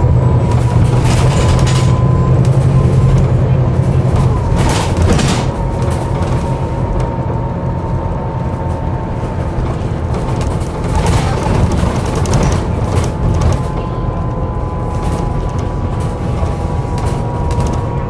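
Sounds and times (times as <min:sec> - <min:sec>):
bus diesel engine running: 0:00.0 - 0:18.0
bodywork rattling: 0:08.6 - 0:14.0.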